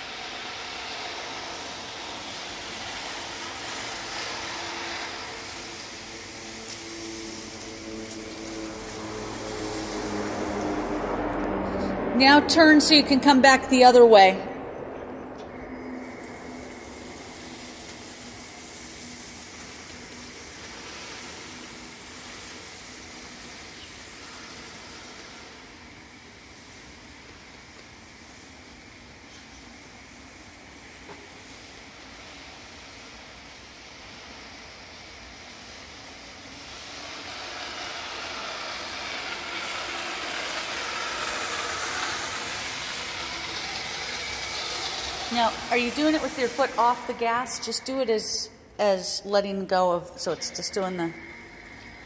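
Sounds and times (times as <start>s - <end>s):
car belly pan scraping road: 36.8s - 47.0s.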